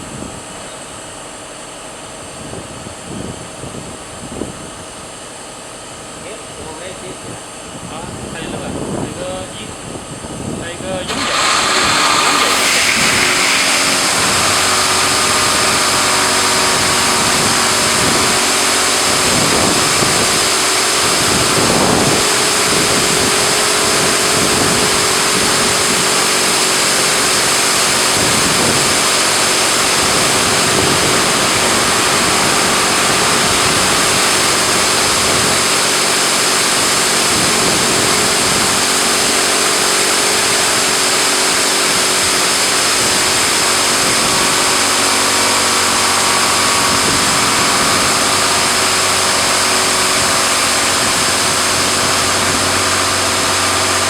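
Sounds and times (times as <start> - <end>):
pump motor humming: 7.8 - 54.0
high-pressure water jets hissing: 11.0 - 54.0.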